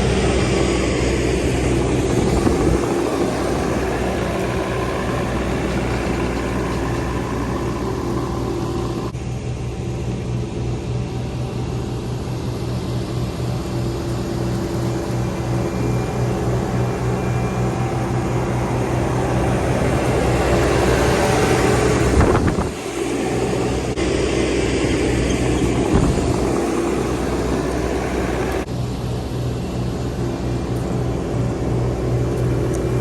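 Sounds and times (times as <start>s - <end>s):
road noise: 0.0s - 9.4s, 10.9s - 33.0s
vehicle engine running: 0.0s - 33.0s.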